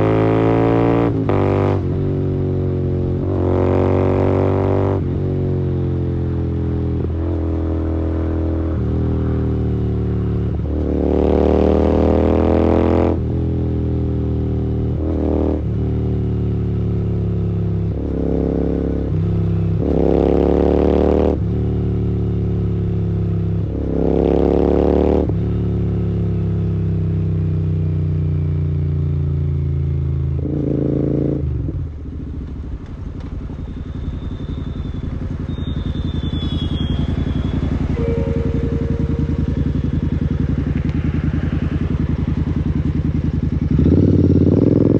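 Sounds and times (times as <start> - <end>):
motorcycle engine revving: 0.0 - 44.9.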